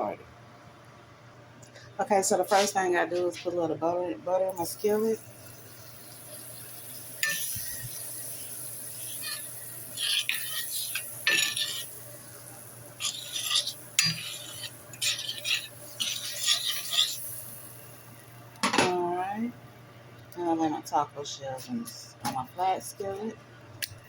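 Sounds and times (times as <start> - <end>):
utensil scraping butter in skillet: 6.5 - 17.8.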